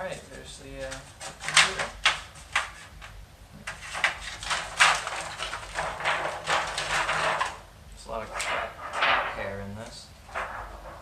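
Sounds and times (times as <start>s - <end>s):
computer case scrapes and knocks: 3.7s - 7.6s, 8.2s - 9.6s.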